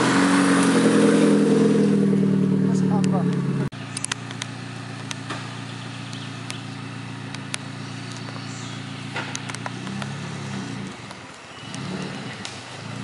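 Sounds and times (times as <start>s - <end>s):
off-road vehicle engine running: 0.0s - 13.0s
sharp clicks and knocks: 9.1s - 10.2s.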